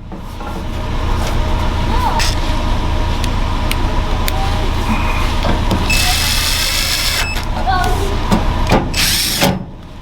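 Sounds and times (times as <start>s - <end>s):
pickup engine idling: 0.0s - 10.0s.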